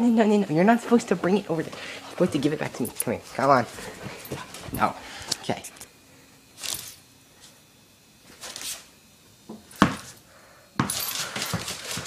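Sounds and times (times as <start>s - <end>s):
puppy scuffing on hard floor: 0.7s - 5.5s, 10.8s - 12.0s
paws scrabbling: 0.8s - 5.3s.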